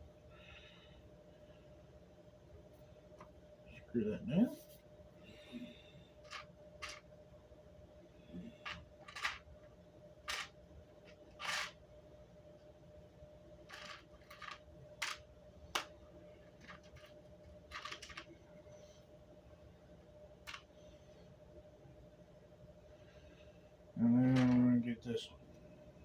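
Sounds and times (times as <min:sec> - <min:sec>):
faint steady hum: 0:00.0 - 0:26.0
plastic parts clicking and scraping: 0:06.2 - 0:07.0, 0:08.6 - 0:09.5, 0:10.3 - 0:11.8, 0:13.7 - 0:18.3.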